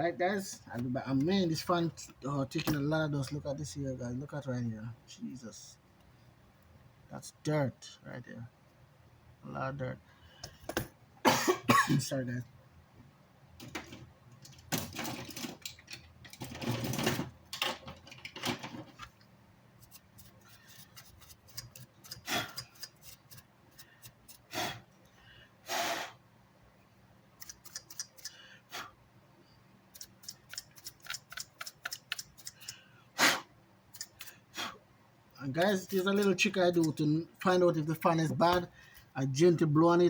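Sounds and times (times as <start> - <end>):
tools clicking and scraping: 19.8 - 23.4, 27.4 - 28.4, 29.9 - 32.8, 33.9 - 34.4, 35.6 - 37.1.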